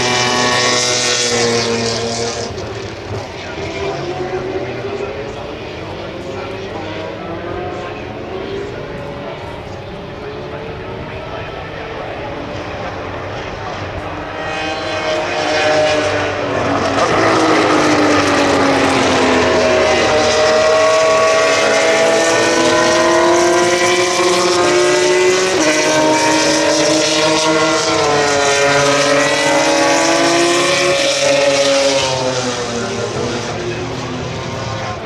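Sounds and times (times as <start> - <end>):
racing car engines running: 0.0 - 35.0.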